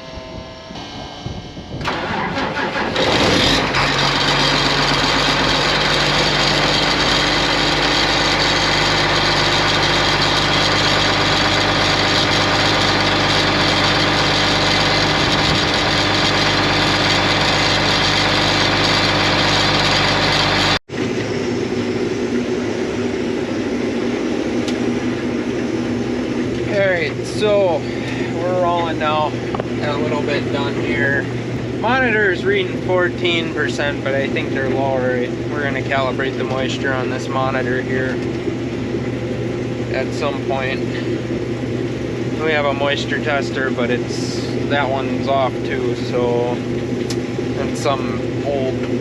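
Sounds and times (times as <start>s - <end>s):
diesel engine running: 0.0s - 49.0s
starter motor cranking: 1.8s - 20.8s.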